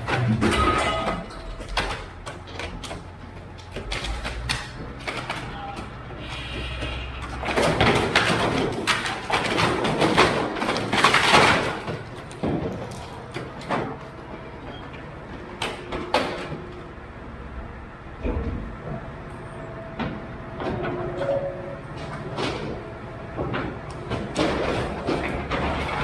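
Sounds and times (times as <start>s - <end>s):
junk crashing out of metal dumpster: 0.0s - 6.0s, 7.2s - 14.0s, 20.1s - 26.0s
sharp metal clanks: 0.2s - 2.2s.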